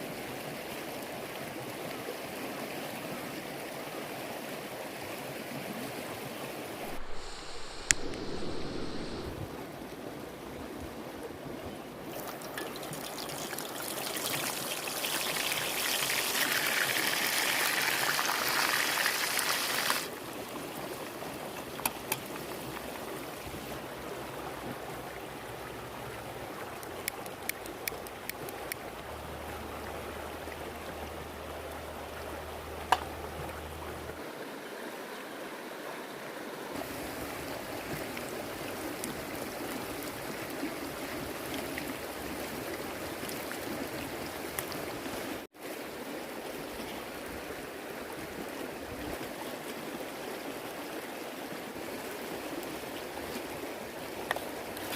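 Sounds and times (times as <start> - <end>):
sharp clicks: 6.9 - 9.4.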